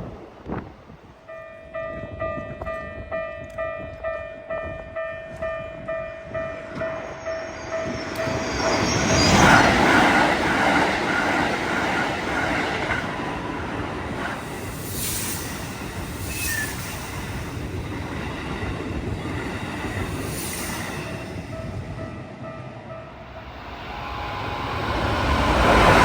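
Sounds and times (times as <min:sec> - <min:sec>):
train rushing past: 0:05.8 - 0:26.0.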